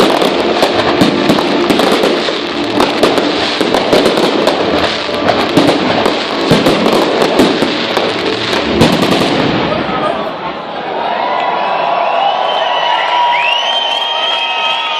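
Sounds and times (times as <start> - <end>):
fireworks crackling and banging: 0.0 - 10.5.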